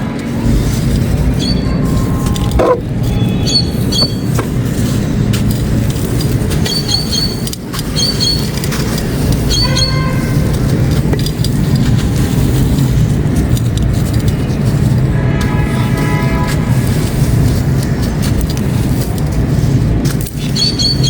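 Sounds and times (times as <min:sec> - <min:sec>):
concrete crunching and grinding: 0:00.2 - 0:06.8.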